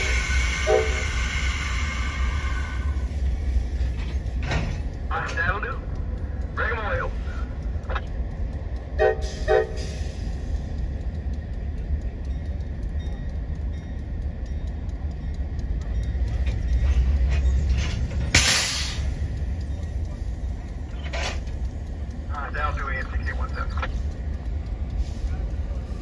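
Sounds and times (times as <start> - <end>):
diesel engine rumbling: 0.0 - 26.0
locomotive horn blasts: 0.6 - 1.1, 9.0 - 9.8.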